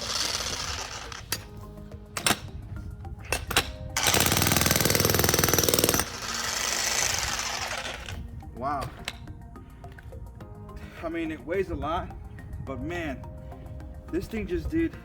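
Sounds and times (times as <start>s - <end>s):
electric jackhammer hammering ground: 0.0s - 1.6s, 2.2s - 2.6s, 3.2s - 8.3s.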